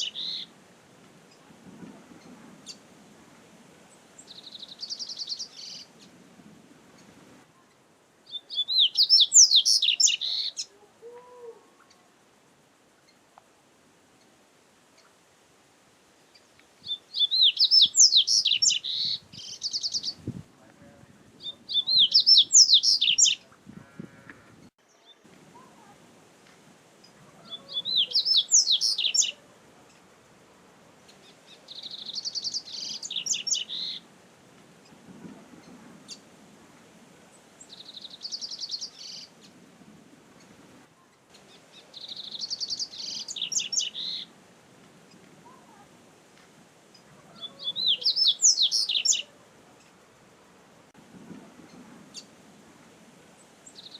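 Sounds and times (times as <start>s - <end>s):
bird twittering song: 0.0s - 0.5s, 4.2s - 6.1s, 7.7s - 10.7s, 16.3s - 20.3s, 21.4s - 23.5s, 27.0s - 30.0s, 31.1s - 34.0s, 37.6s - 39.5s, 41.1s - 44.3s, 46.9s - 49.3s, 53.6s - 53.9s.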